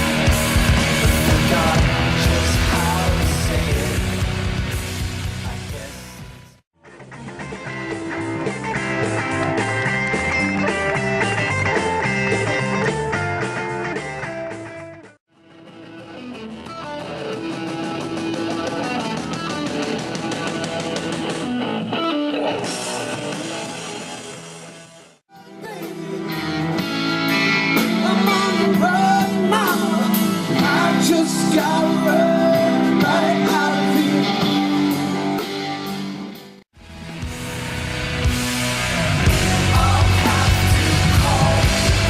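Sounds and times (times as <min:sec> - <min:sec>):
live rock band playing: 0:00.0 - 0:42.0
person singing: 0:01.0 - 0:04.3, 0:27.8 - 0:35.4, 0:38.9 - 0:42.0.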